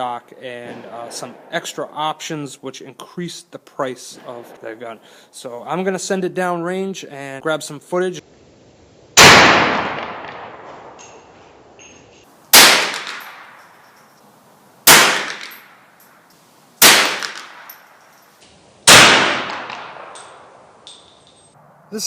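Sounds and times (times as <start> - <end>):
rifle shots with echo: 9.2 - 11.0, 12.5 - 13.6, 14.8 - 15.7, 16.8 - 17.8, 18.8 - 20.6.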